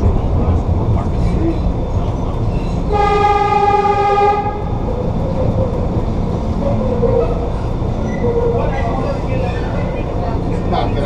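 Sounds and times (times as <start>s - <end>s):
rail car rumble in tunnel: 0.0s - 11.0s
trolley horn blast: 2.9s - 4.9s.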